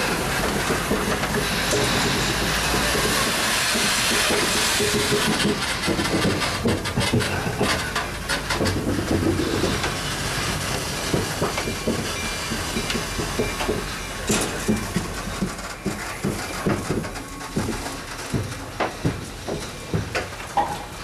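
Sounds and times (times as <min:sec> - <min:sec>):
hiss of steam: 0:00.0 - 0:08.2
train wheels clacking over rail joints: 0:00.0 - 0:21.0.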